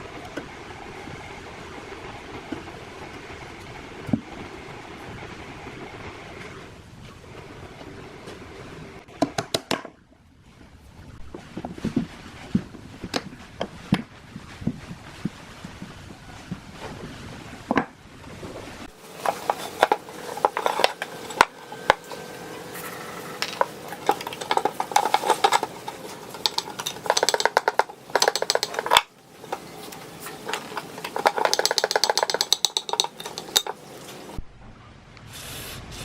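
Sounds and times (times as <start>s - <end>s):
metal scraping and clinking: 18.9s - 34.4s.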